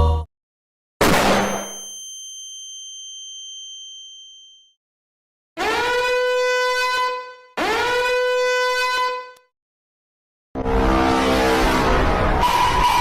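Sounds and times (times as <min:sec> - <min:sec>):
bell-like ding: 0:01.2 - 0:04.8.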